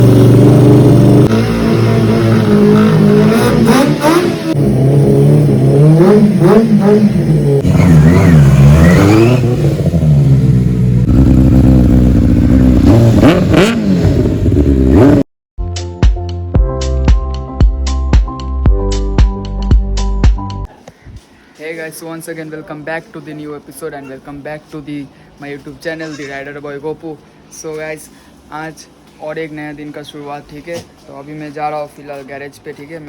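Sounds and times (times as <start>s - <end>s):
motorcycle engine revving: 0.0s - 15.3s
music with regular beat: 15.6s - 20.7s.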